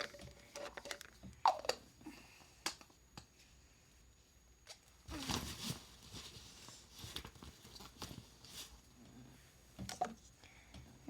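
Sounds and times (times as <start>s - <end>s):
plastic bottles clicking: 0.0s - 1.8s.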